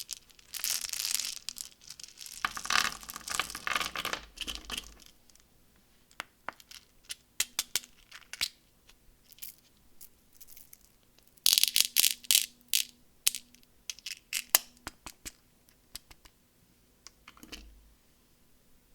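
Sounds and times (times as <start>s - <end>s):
wrapper crinkling: 0.0s - 3.6s.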